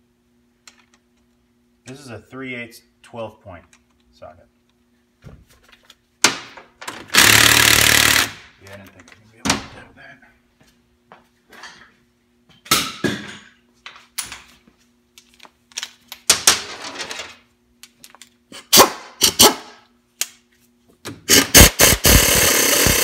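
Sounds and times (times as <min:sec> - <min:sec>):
pneumatic tool hammering: 0:07.1 - 0:08.4, 0:18.6 - 0:19.8, 0:21.3 - 0:23.0.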